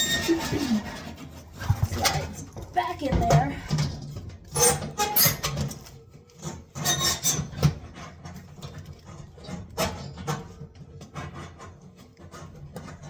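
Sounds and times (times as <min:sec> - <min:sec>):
metal part scraping and rubbing: 0:00.0 - 0:02.6, 0:04.5 - 0:09.0.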